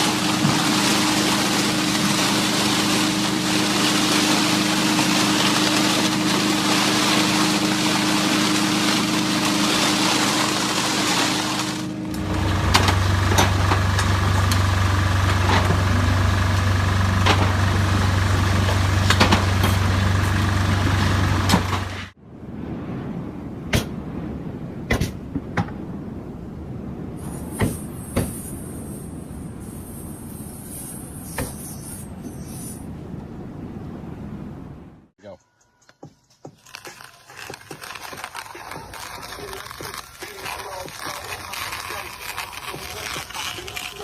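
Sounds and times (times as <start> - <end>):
heavy machinery engine hum: 0.0 - 22.2
deeper machine hum: 0.0 - 24.8.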